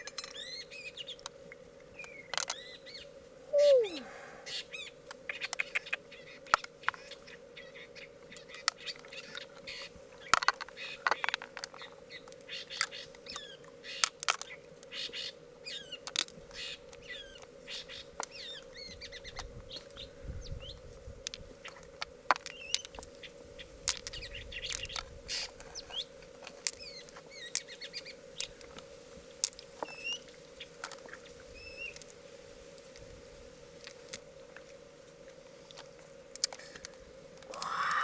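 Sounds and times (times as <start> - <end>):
small birds chirping: 2.0 - 9.9, 37.5 - 38.0.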